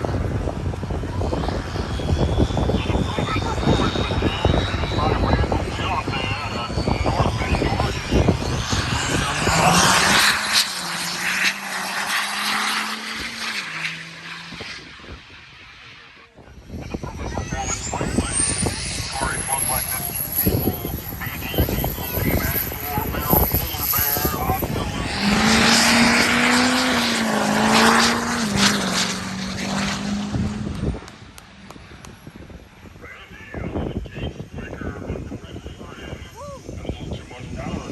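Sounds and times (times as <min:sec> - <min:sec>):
diesel truck engine roaring: 0:00.0 - 0:34.7
vehicle engine running: 0:16.1 - 0:32.8.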